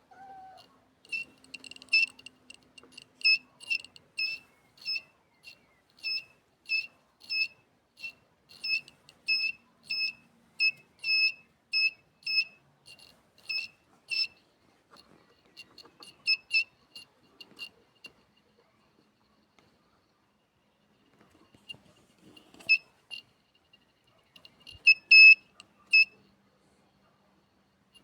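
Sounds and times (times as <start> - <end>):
metal detector short high beeps: 0.5 - 15.0, 15.6 - 18.2, 21.6 - 23.8, 24.4 - 26.2.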